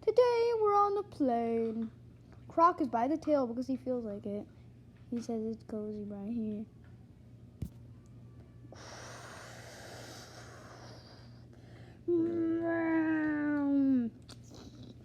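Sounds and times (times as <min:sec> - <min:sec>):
child making airplane sounds: 0:12.1 - 0:14.2.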